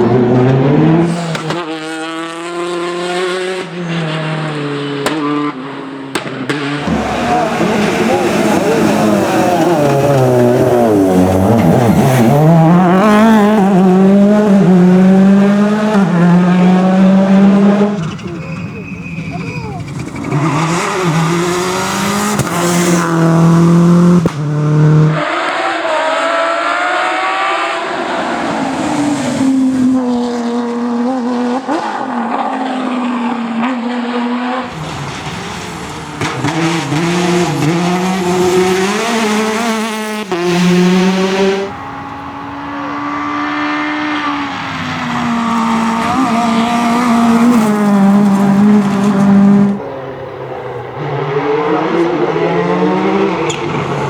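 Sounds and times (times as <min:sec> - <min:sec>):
rally car engines revving: 0:00.0 - 0:54.0.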